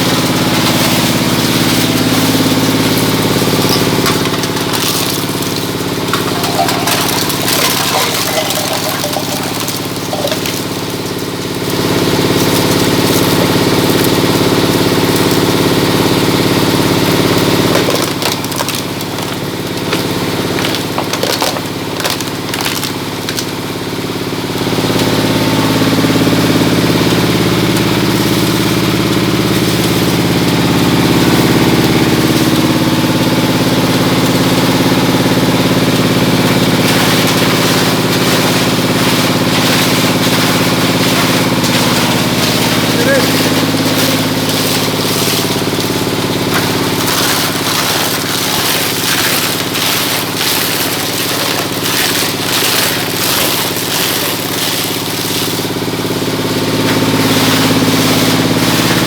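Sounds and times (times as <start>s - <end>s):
shredder motor drone: 0.0s - 59.0s
crunching and cracking: 2.7s - 11.8s, 17.7s - 23.5s, 36.4s - 55.7s.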